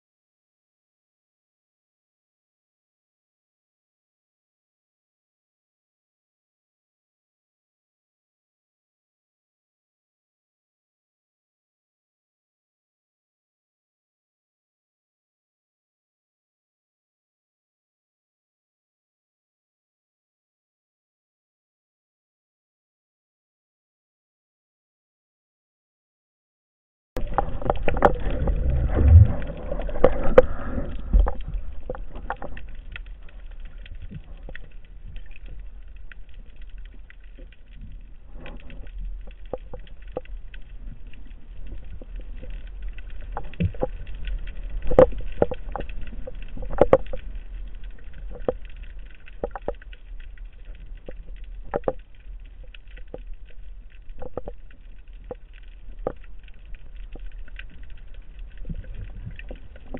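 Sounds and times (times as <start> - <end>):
underwater clicks and knocks: 27.2 - 59.9
underwater low rumble: 27.2 - 59.9.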